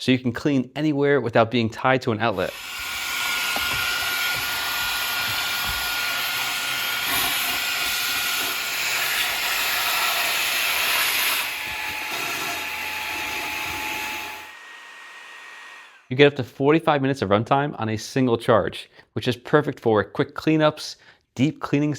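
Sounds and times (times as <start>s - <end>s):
vacuum cleaner running: 2.3s - 16.1s.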